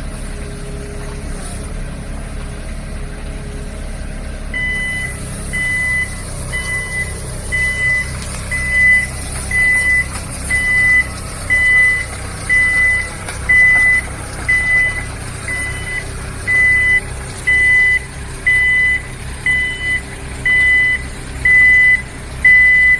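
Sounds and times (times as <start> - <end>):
excavator engine running: 0.0 - 22.9
high reversing alarm beeps: 4.6 - 22.9.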